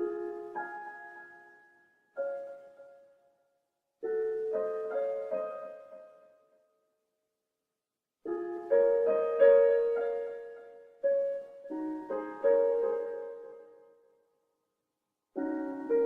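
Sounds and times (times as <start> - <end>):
solo piano chords: 0.0 - 3.4, 4.0 - 6.7, 8.2 - 14.3, 15.4 - 16.0.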